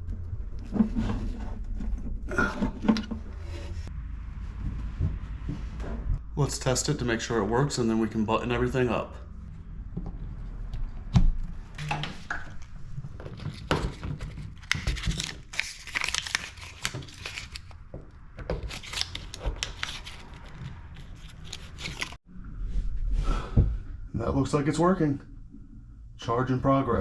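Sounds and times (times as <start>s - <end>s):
rustling and crinkling: 0.0s - 6.2s, 9.9s - 22.2s.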